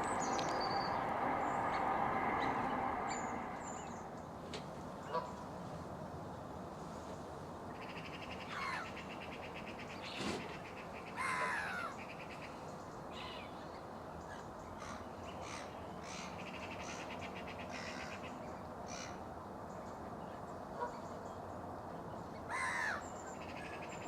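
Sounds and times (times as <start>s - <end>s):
crows cawing: 8.5s - 8.9s, 11.2s - 11.9s, 22.5s - 23.0s.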